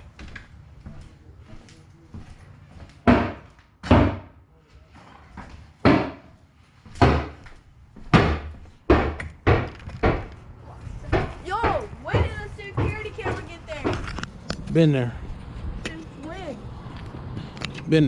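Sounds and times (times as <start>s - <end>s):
heavy thuds: 11.0s - 14.1s.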